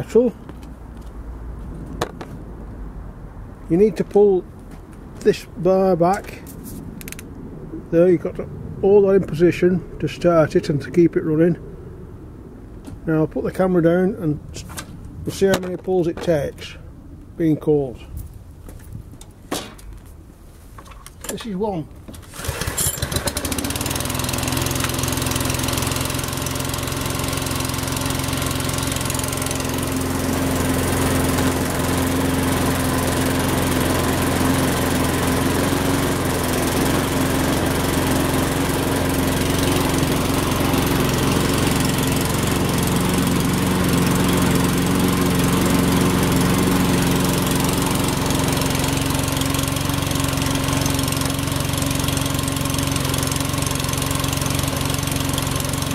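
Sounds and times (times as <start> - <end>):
lawn mower engine running: 21.2 - 55.9
starter cord pull: 22.1 - 23.6.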